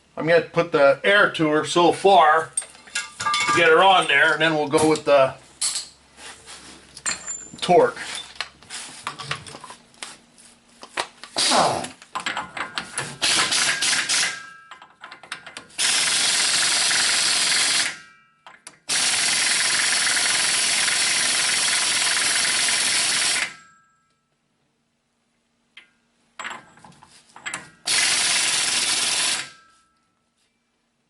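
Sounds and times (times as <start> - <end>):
metal tools clinking: 2.3 - 6.0, 7.0 - 9.7
pneumatic impact wrench: 11.4 - 11.9, 12.8 - 14.5, 15.7 - 18.0, 18.9 - 23.6, 27.8 - 29.6.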